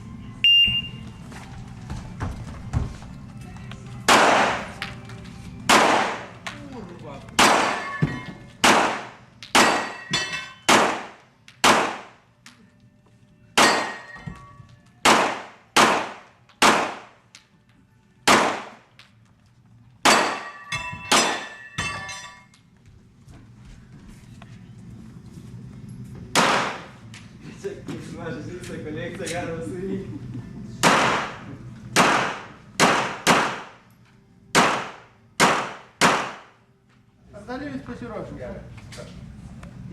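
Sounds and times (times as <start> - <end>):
handgun shots echoing: 4.1 - 4.7, 5.7 - 6.4, 7.4 - 7.9, 8.6 - 10.0, 10.7 - 12.2, 15.0 - 17.1, 18.3 - 18.8, 26.4 - 26.9, 30.8 - 31.4, 32.0 - 33.8, 34.6 - 36.5.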